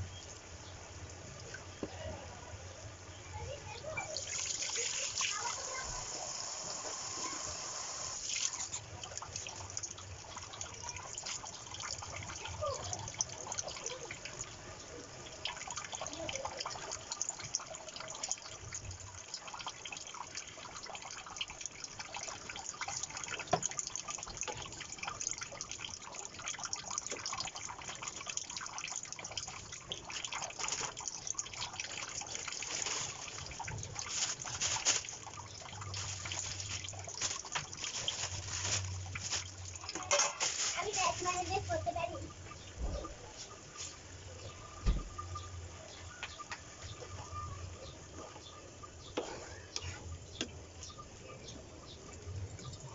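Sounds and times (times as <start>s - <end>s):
small clicks and drips: 0.0s - 2.0s, 8.2s - 52.9s
tap water running into sink: 4.2s - 14.5s, 15.3s - 42.0s.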